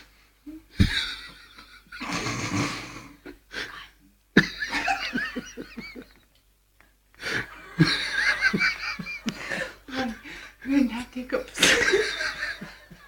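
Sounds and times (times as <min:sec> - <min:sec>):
breathy laughter: 0:00.8 - 0:03.7.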